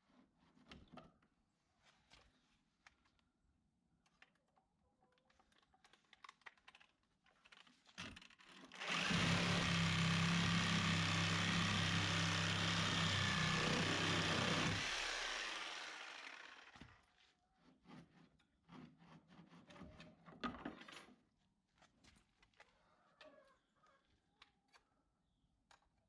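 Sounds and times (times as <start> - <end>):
electric power tool running: 8.8 - 17.0.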